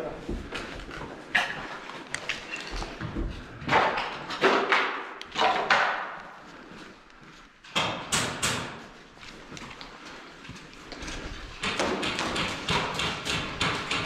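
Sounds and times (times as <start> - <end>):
sharp knocks and thuds echoing: 3.2 - 6.2, 7.7 - 8.8, 11.6 - 14.0.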